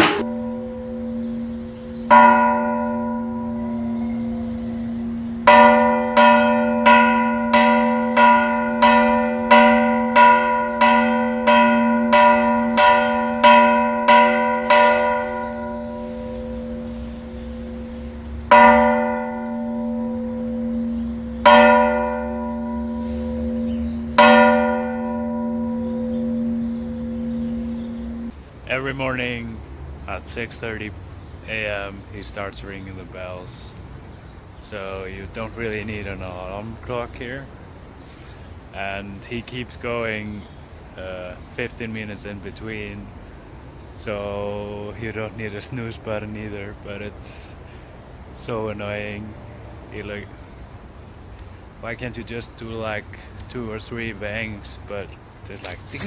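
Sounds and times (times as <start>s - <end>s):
church bell ringing: 0.0s - 28.4s.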